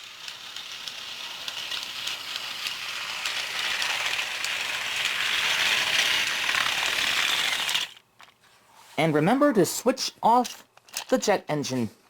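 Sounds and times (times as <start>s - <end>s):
toy jet engine rushing hiss: 0.0s - 8.0s.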